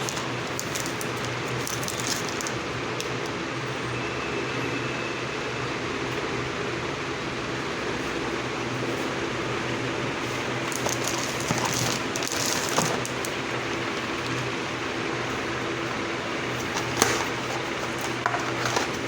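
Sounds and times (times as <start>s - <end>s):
room hum and hiss: 0.0s - 19.0s
brief rustles and clicks: 10.6s - 14.5s, 16.5s - 19.0s.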